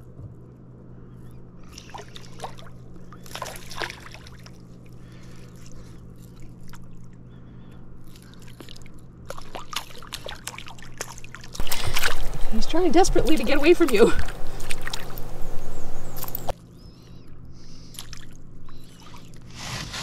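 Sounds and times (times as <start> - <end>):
steady low hum: 0.0 - 10.1, 11.6 - 19.6
fish splashing in water: 1.7 - 7.0, 8.1 - 16.5.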